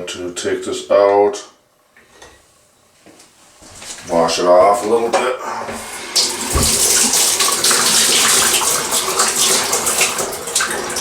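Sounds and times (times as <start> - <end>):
water running from a tap: 5.8 - 11.0.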